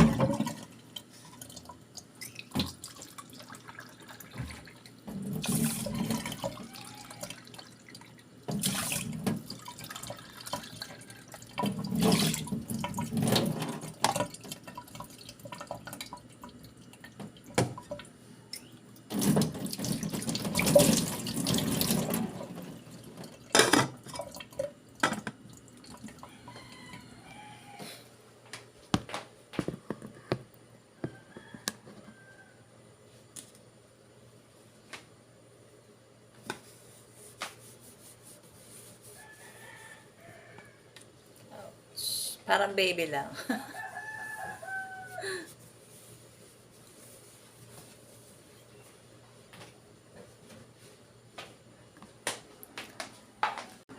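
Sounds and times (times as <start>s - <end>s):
tap water running into sink: 1.4s - 18.1s, 19.1s - 26.3s.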